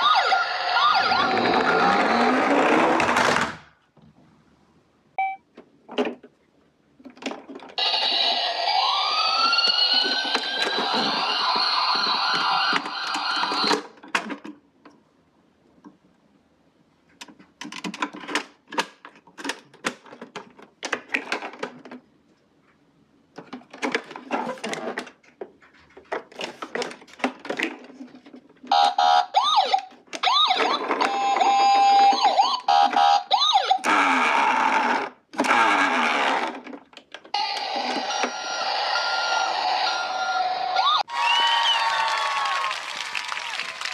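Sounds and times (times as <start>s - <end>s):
toy siren wailing: 0.0s - 2.5s, 7.8s - 13.7s, 28.7s - 34.4s, 37.4s - 41.1s.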